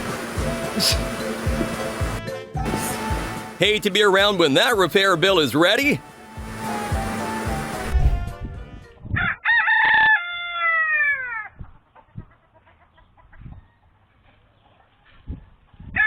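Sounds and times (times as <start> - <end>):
hiss: 0.0 - 3.4
rooster crowing: 9.1 - 11.6.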